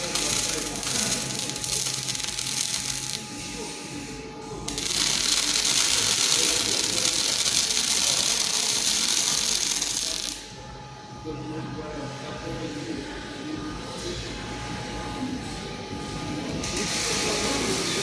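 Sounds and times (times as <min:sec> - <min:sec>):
welding arc crackling and hissing: 0:00.0 - 0:10.5, 0:16.6 - 0:18.0.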